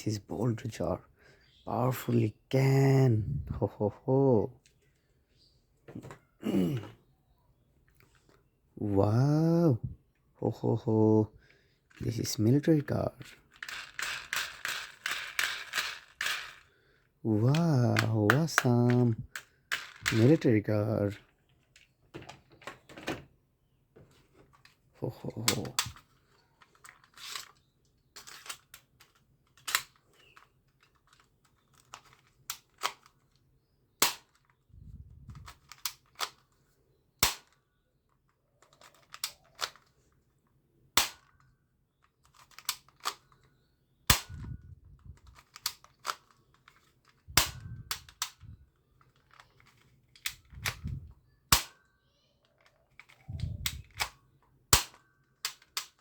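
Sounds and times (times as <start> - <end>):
toy gun firing cracks: 34.0 - 34.4, 37.2 - 37.6, 41.0 - 41.3, 44.1 - 44.5, 47.4 - 48.4, 51.5 - 51.8, 53.7 - 56.0.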